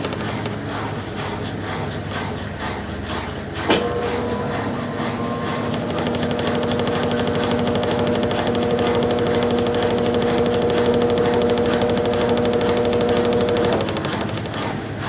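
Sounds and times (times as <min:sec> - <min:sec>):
motor humming: 0:00.0 - 0:15.0
water swishing in washing machine: 0:00.0 - 0:15.0
washing machine click: 0:03.7 - 0:14.7.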